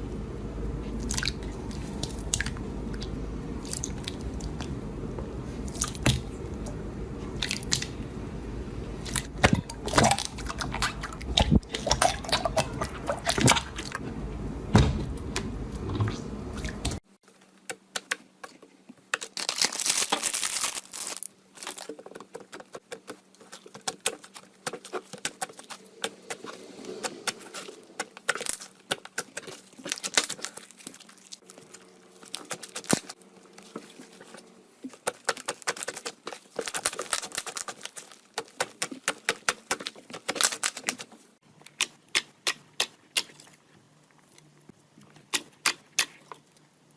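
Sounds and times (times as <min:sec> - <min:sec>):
slime crackling and popping: 0:19.2 - 0:21.9, 0:35.0 - 0:41.0.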